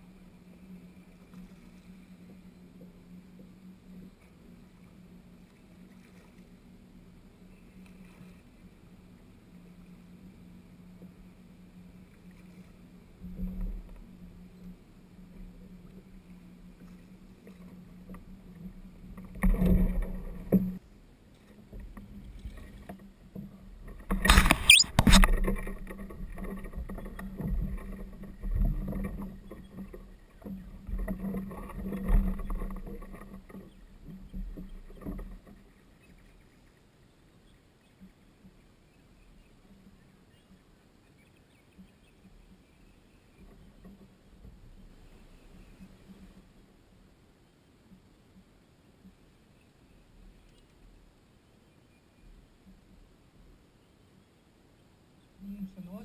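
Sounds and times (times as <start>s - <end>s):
kayak knocks and bumps: 19.1s - 20.8s, 21.7s - 35.6s.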